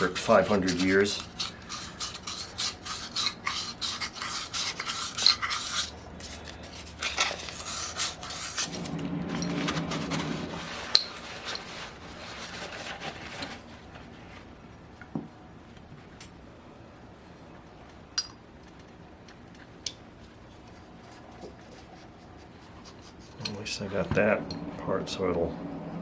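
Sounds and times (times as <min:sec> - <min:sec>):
metal parts scraping: 0:00.0 - 0:11.8.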